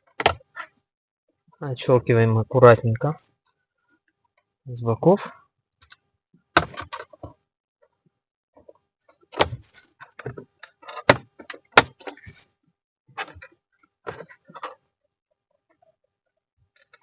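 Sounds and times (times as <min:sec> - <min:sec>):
plastic clicking and rattling: 0:13.2 - 0:14.8.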